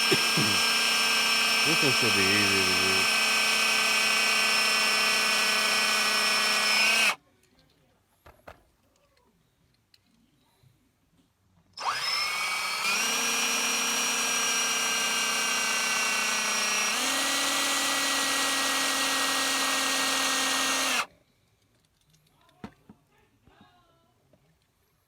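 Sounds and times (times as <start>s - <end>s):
small electric drill drilling: 0.0s - 7.2s, 11.8s - 21.1s.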